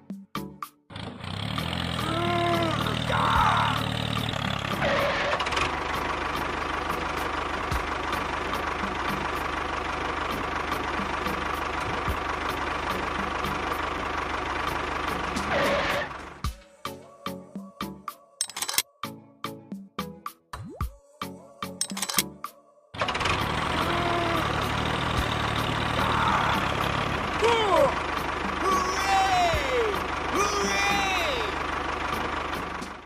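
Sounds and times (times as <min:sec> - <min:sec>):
vehicle engine running: 0:00.9 - 0:16.6, 0:23.0 - 0:33.0.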